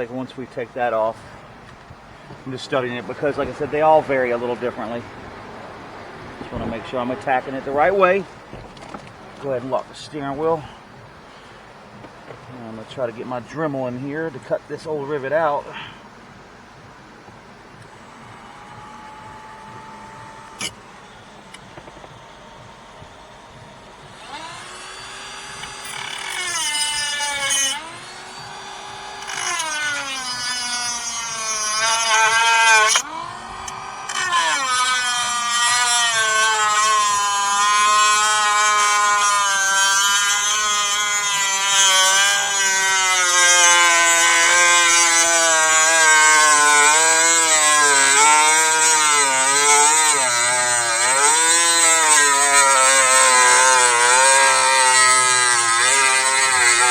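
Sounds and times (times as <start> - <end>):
rotary tool grinding metal: 17.9 - 22.1, 24.0 - 56.9.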